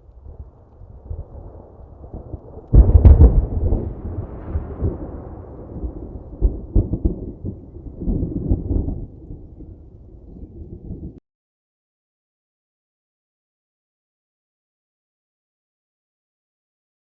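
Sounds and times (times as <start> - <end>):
rolling thunder rumble: 0.0 - 11.2
thunderclap: 0.2 - 11.2.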